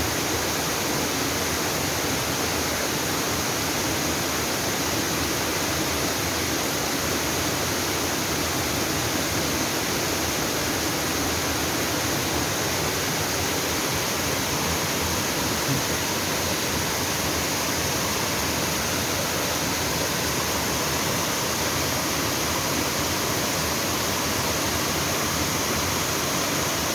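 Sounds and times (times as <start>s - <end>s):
waterfall rushing: 7.3s - 26.9s.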